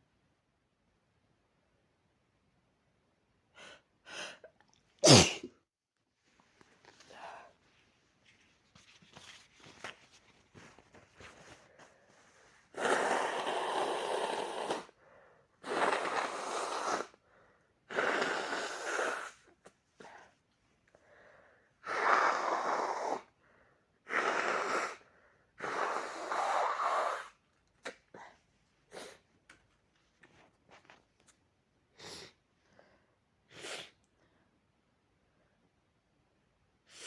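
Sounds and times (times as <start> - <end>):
person blowing nose: 5.0 - 5.5, 12.7 - 15.0, 15.6 - 17.2, 17.9 - 19.5, 21.8 - 23.3, 24.0 - 27.4.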